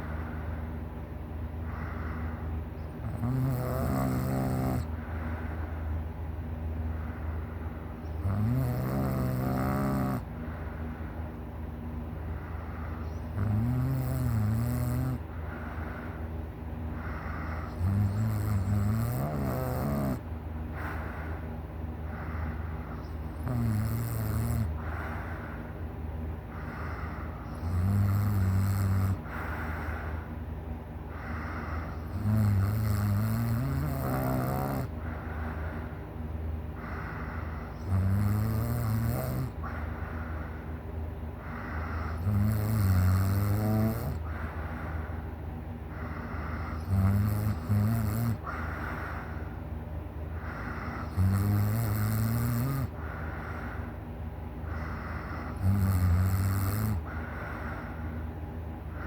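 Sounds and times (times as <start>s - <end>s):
person breathing softly: 0.0s - 1.0s, 1.6s - 3.2s, 4.8s - 8.2s, 10.2s - 13.6s, 15.2s - 18.1s, 20.2s - 23.4s, 24.6s - 27.8s, 28.8s - 32.2s, 34.9s - 38.0s, 39.3s - 42.4s, 44.1s - 47.2s, 48.4s - 51.2s, 52.8s - 55.8s, 57.0s - 59.0s
person snoring: 3.0s - 5.0s, 8.2s - 10.3s, 13.0s - 15.2s, 17.0s - 20.2s, 22.2s - 25.4s, 26.6s - 29.9s, 31.2s - 35.0s, 36.8s - 39.9s, 41.4s - 44.4s, 46.0s - 49.3s, 50.4s - 53.8s, 54.7s - 57.8s.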